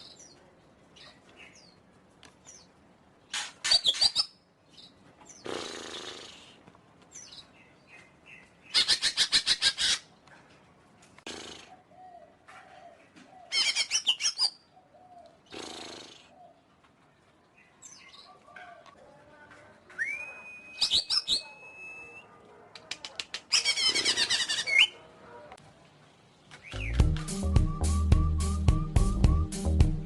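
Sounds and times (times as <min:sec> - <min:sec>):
bird chattering song: 0:20.0 - 0:22.2, 0:26.5 - 0:27.0.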